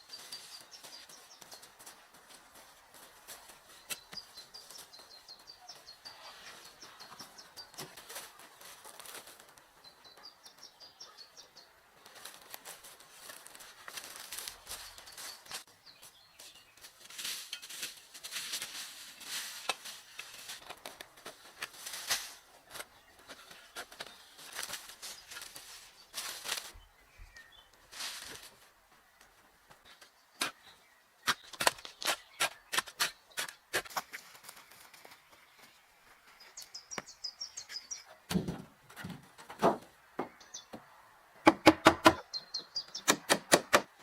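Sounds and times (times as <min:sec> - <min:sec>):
small bird singing: 0:00.0 - 0:02.1, 0:03.6 - 0:08.6, 0:09.8 - 0:11.8, 0:22.9 - 0:27.8, 0:35.2 - 0:38.2, 0:40.2 - 0:40.8, 0:42.1 - 0:43.3
rustling and crackling: 0:00.0 - 0:10.4, 0:12.0 - 0:30.6, 0:33.6 - 0:40.0.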